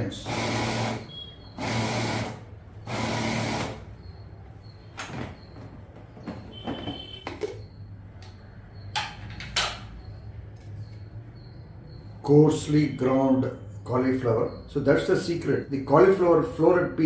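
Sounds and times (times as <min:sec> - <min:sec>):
food processor motor grinding: 0:00.1 - 0:03.8
clicks and knocks: 0:05.0 - 0:10.0.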